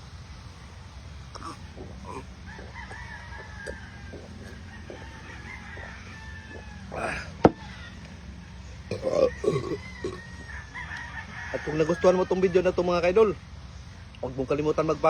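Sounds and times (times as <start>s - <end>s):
crunchy chewing clicks: 1.0s - 11.8s
rooster crowing: 1.4s - 13.1s.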